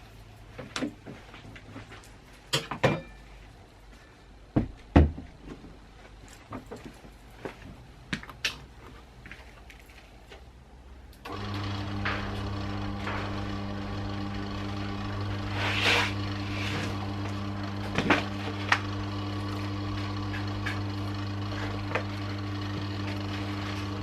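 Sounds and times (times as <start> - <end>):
low machine hum: 11.2 - 24.0.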